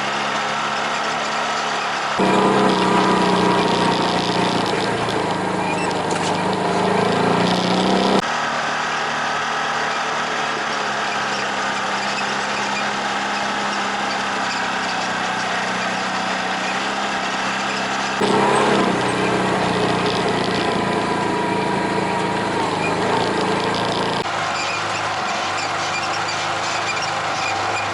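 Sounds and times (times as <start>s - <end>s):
off-road vehicle engine running: 0.0s - 27.9s.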